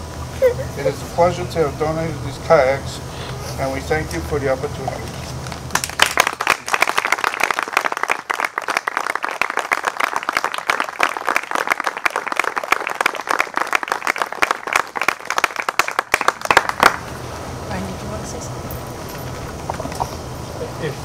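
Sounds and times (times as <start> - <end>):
crowd applauding: 5.7 - 17.2.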